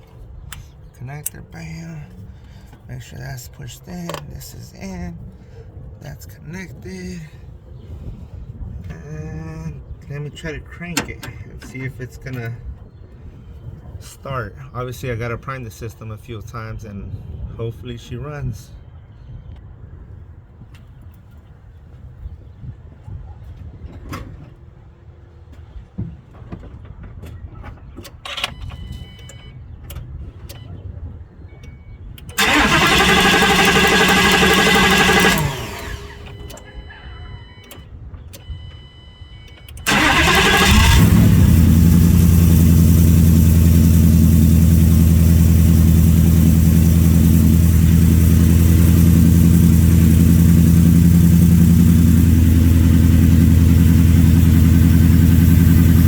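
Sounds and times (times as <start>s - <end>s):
engine cranking: 32.2s - 36.6s, 39.8s - 56.0s
engine idling: 32.3s - 36.6s, 39.8s - 56.0s.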